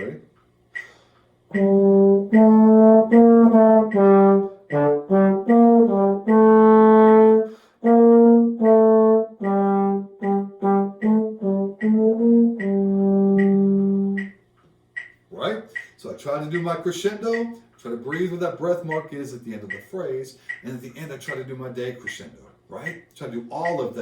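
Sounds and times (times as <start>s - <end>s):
metronome ticking: 0.0s - 24.0s
brass instrument melody: 1.5s - 14.3s.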